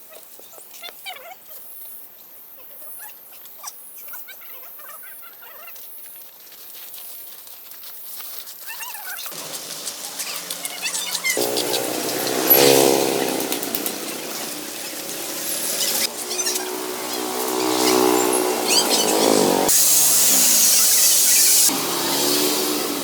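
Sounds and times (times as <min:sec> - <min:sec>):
pattering: 0:09.3 - 0:21.7
motor starting: 0:09.4 - 0:23.0
steady hiss: 0:09.4 - 0:23.0
small animals squeaking: 0:09.9 - 0:21.7.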